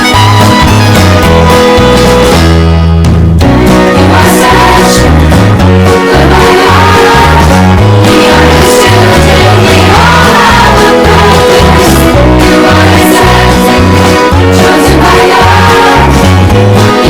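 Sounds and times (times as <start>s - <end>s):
repeating bass line: 0.0s - 17.0s
upbeat song with guitar: 0.0s - 17.0s
person singing: 3.6s - 17.0s.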